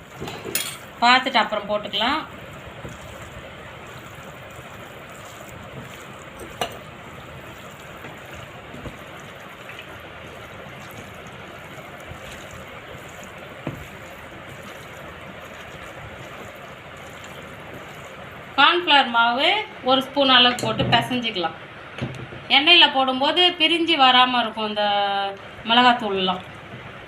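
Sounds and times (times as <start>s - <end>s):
wet stirring of chicken by hand: 0.0s - 19.1s.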